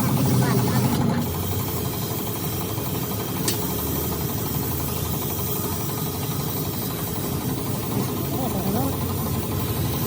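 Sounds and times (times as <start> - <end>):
engine idling: 0.0 - 10.0
sharp click: 3.4 - 3.7.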